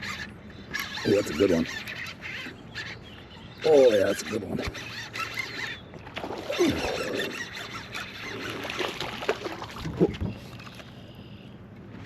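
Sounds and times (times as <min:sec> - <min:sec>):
water splashing: 0:06.0 - 0:10.9.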